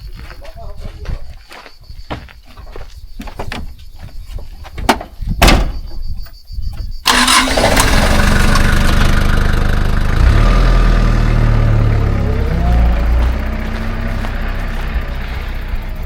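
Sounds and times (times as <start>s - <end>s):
vehicle engine starting and humming: 7.0s - 16.0s.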